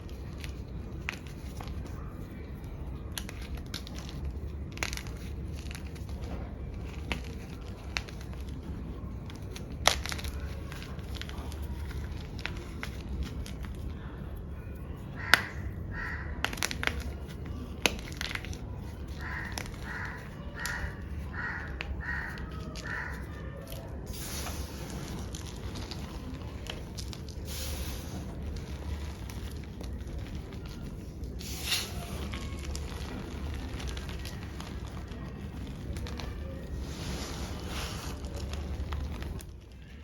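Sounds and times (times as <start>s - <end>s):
chalk block crunching: 0.0s - 40.0s.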